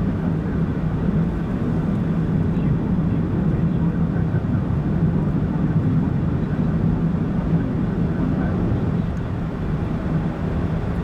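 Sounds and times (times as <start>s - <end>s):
car engine hum and road noise: 8.8s - 11.0s.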